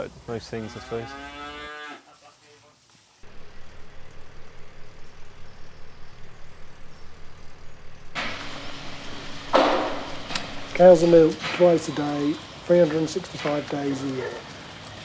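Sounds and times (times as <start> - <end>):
cow mooing: 0.6 - 2.0
milking machinery humming and pulsing: 3.3 - 15.0.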